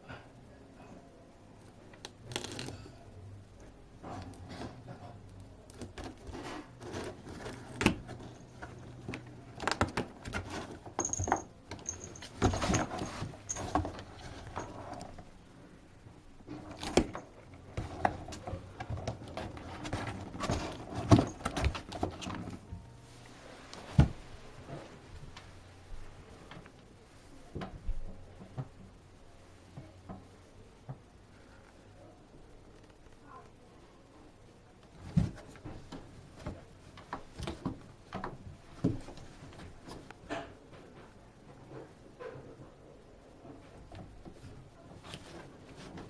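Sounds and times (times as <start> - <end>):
cat rustling and scraping: 4.0 - 11.0, 11.9 - 15.3, 16.5 - 26.7, 44.2 - 46.0
ornaments knocking and clinking: 11.0 - 14.8.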